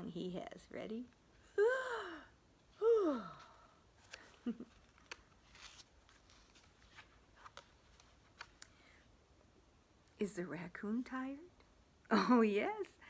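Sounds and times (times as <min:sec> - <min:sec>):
woman yawning: 0:01.5 - 0:03.7
soft handling noises: 0:02.6 - 0:09.2.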